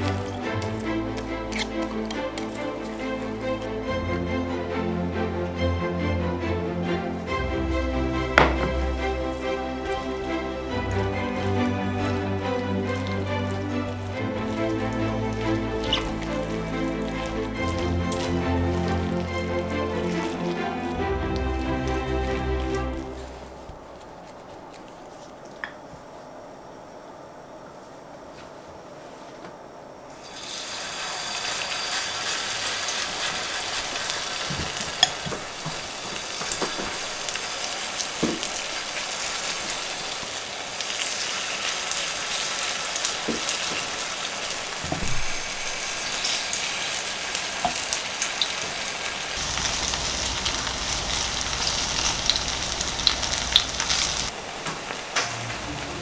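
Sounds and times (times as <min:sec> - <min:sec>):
batter sizzling in hot oil: 0:12.0 - 0:23.4, 0:30.2 - 0:56.0.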